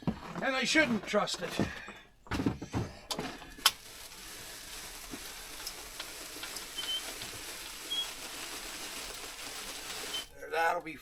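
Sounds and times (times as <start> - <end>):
snow falling with crackling hiss: 3.6 - 10.7.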